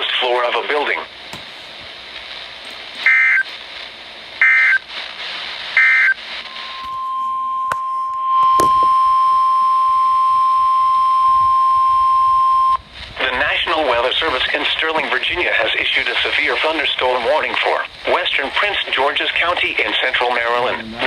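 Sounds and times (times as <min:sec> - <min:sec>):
radio hiss: 0:00.0 - 0:07.1, 0:12.8 - 0:21.0
steady warning alarm tone: 0:03.0 - 0:03.5, 0:05.8 - 0:12.8.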